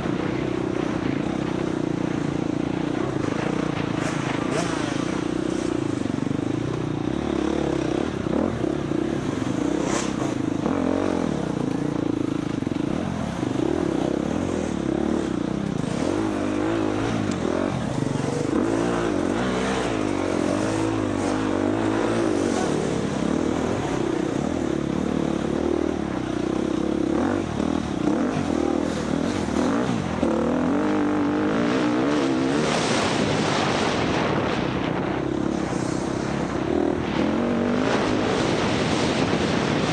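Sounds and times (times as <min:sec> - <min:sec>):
dirt bike engine revving: 0:00.0 - 0:39.9.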